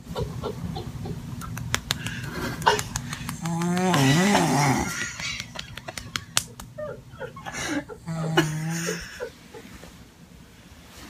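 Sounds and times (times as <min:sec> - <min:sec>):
man snoring: 0:03.4 - 0:05.1, 0:08.0 - 0:09.1.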